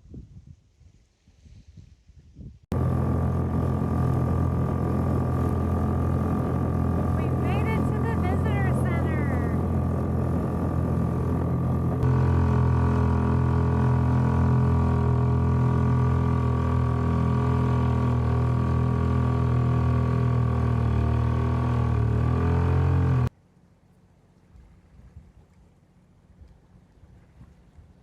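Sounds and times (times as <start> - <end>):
boat engine droning: 2.7 - 24.9.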